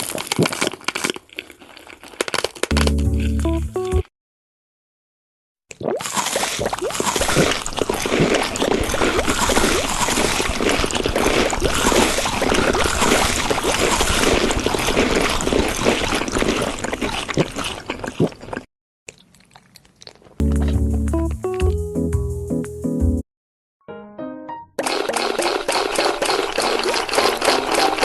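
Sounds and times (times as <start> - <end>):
wet chewing and slurping: 0.0 - 3.6, 5.7 - 20.4, 24.8 - 28.0
music: 2.7 - 4.1, 20.4 - 23.2, 23.8 - 24.8.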